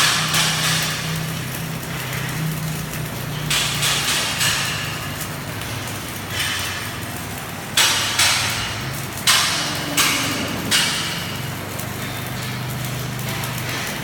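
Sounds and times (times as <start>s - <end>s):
hammer striking metal: 0.0s - 1.2s, 3.4s - 5.1s, 7.8s - 12.6s
low machine hum: 8.6s - 14.0s.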